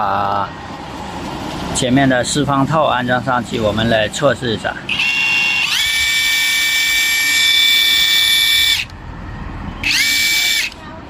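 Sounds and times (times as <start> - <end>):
impact wrench motor whine: 4.9 - 9.0, 9.8 - 10.8.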